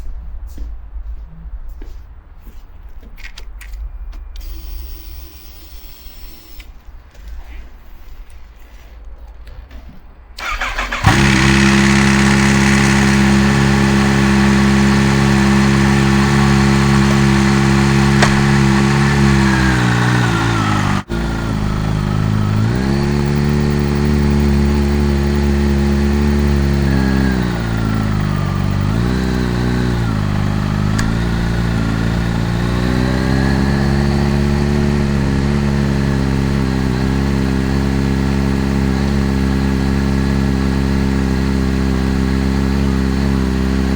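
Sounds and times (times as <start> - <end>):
engine starter cranking: 10.4 - 39.4
motorcycle engine idling: 10.4 - 43.9.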